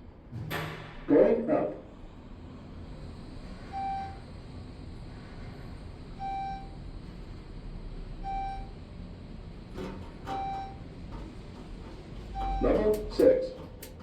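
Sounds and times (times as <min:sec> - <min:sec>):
elevator humming: 0:01.9 - 0:14.0
short electronic beeps: 0:12.4 - 0:12.8.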